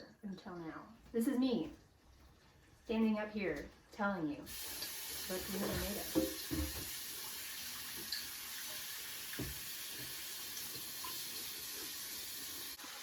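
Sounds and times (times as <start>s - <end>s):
chicken sizzling in oil: 4.5s - 13.0s.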